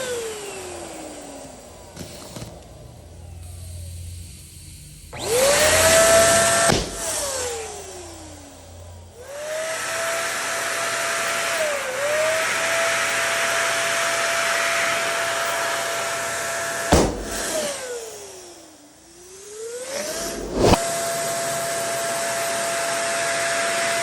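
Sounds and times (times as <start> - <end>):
electric air pump blowing: 3.3 - 24.0
balloon popping: 16.9 - 17.6.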